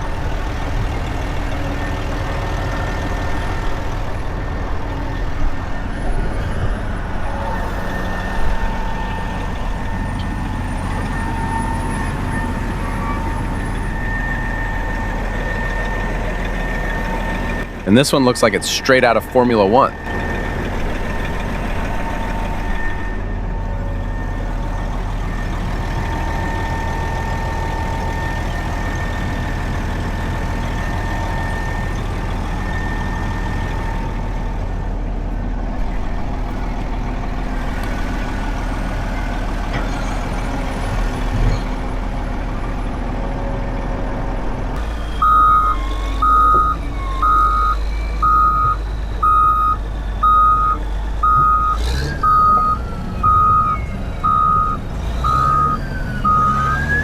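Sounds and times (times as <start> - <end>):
heavy vehicle engine whining: 0.0 - 57.0
backup alarm beeping: 7.2 - 34.3, 44.8 - 57.0.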